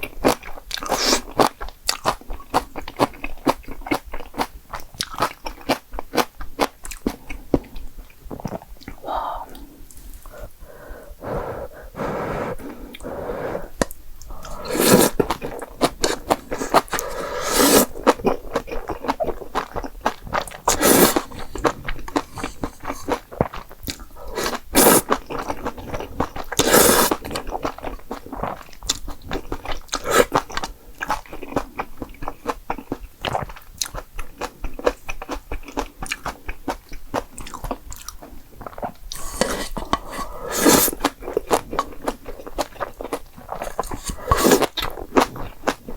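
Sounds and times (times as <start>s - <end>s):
person chewing and crunching: 0.0s - 10.8s, 12.7s - 45.9s
loud bite: 11.2s - 18.2s, 20.4s - 23.2s, 43.6s - 45.3s.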